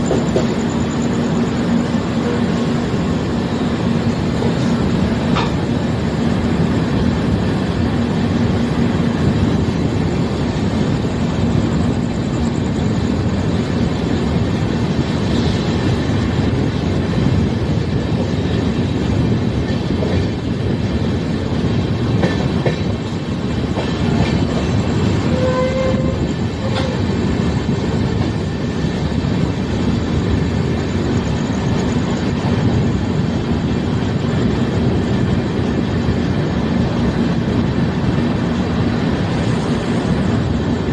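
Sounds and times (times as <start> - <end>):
train wheels rumbling on track: 0.0 - 40.9.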